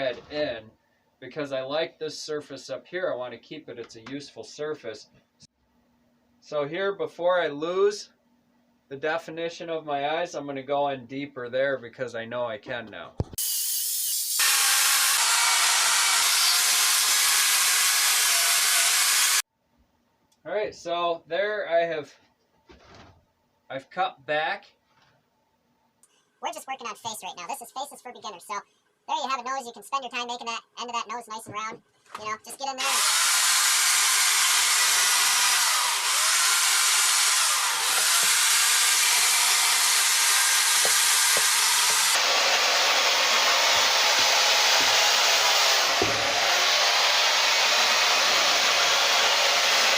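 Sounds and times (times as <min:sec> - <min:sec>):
chainsaw cutting wood: 0:13.4 - 0:19.4, 0:32.8 - 0:49.9.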